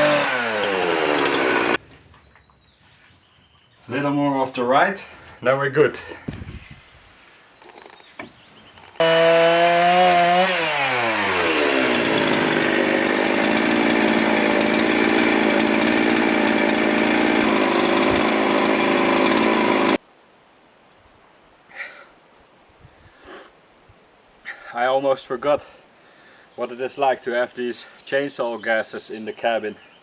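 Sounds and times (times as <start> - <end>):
chainsaw cutting log: 0.0 - 1.8, 9.0 - 20.0.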